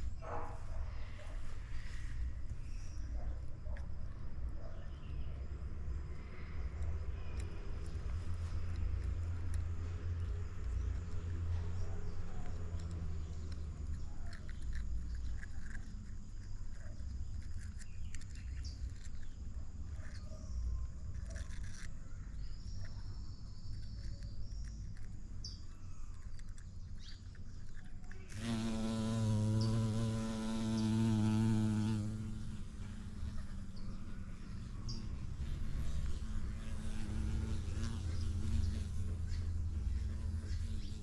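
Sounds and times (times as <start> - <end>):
bumblebee buzzing: 28.2 - 41.0.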